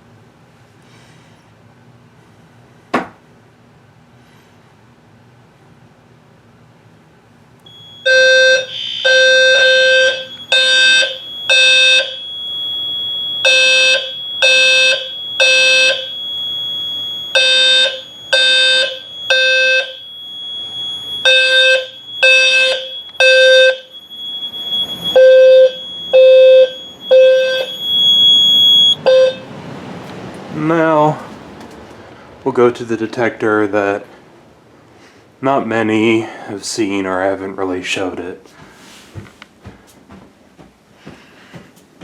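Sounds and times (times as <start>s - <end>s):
fire alarm horn pulses: 7.7s - 29.9s
steady high-pitched tone: 7.7s - 31.3s.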